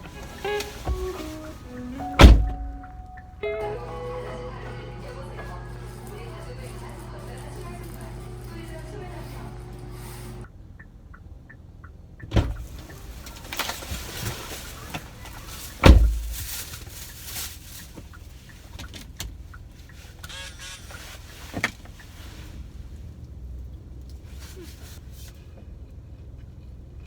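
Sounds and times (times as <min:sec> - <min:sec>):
knocks and thumps in a car: 0:00.0 - 0:03.1, 0:12.2 - 0:17.0.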